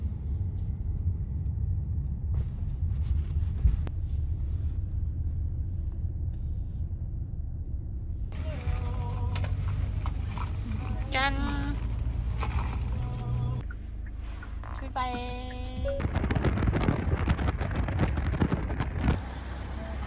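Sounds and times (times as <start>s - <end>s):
car cabin rumble: 0.0s - 20.0s.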